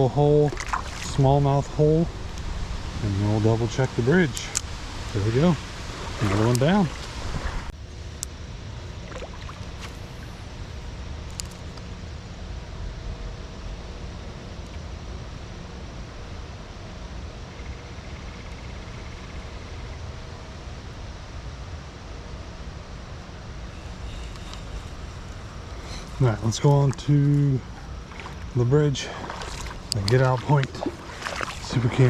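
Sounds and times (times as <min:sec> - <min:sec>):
creek flowing: 0:00.0 - 0:07.7, 0:23.7 - 0:32.0
wind rumbling on microphone: 0:00.0 - 0:17.7, 0:22.2 - 0:32.0.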